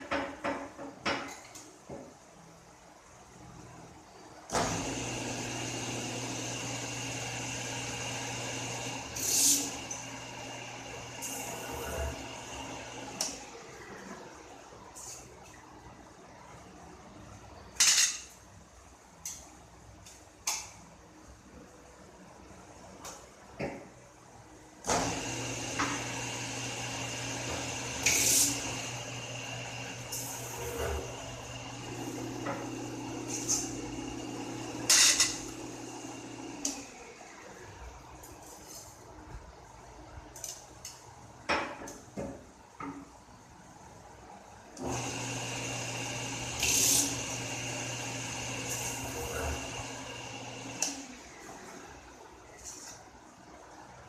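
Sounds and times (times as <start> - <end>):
metal-spinning lathe running: 4.7 - 13.2, 24.9 - 37.0, 44.8 - 51.1.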